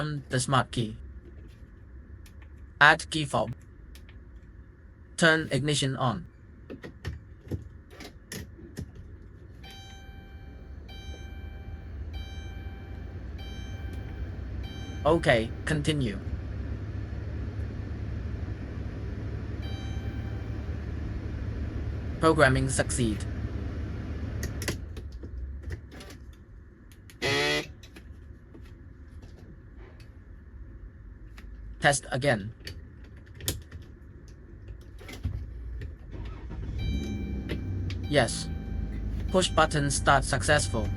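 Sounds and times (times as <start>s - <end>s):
steady low hum: 0.0s - 36.0s
loud electronic beep: 9.6s - 15.5s, 19.6s - 20.5s, 36.7s - 40.9s
dashboard warning chime: 9.6s - 16.2s, 19.6s - 20.7s, 36.6s - 40.9s.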